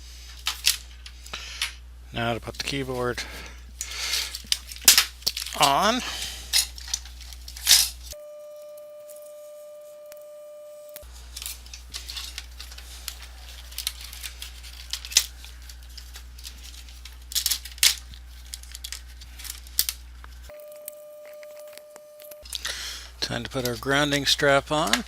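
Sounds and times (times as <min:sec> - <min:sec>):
steady low hum: 0:00.0 - 0:25.0
steady high tone: 0:08.2 - 0:11.1, 0:20.5 - 0:22.5.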